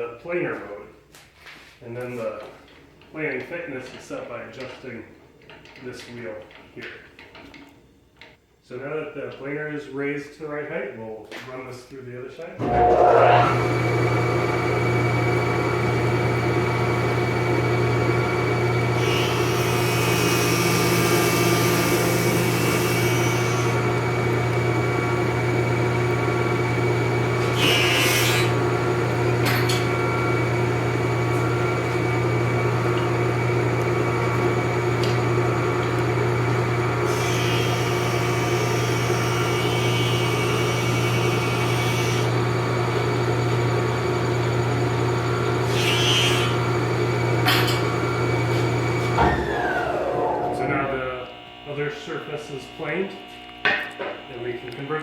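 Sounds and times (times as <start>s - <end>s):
board hissing through planer: 12.6s - 32.2s, 36.9s - 42.4s, 45.6s - 46.8s
planer motor hum: 12.6s - 55.0s.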